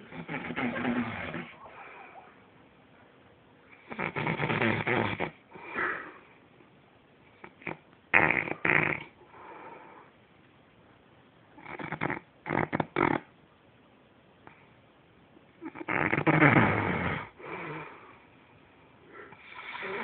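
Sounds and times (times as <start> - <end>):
man snoring: 0.0 - 1.6, 3.9 - 5.4, 7.6 - 9.1, 15.7 - 17.8, 19.4 - 20.0
quiet breathing: 0.0 - 4.1, 5.4 - 6.6, 8.6 - 10.3, 17.2 - 20.0.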